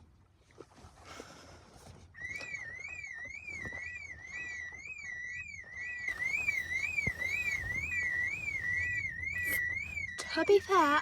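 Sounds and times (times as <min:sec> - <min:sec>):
warbling car alarm: 0:02.2 - 0:11.0.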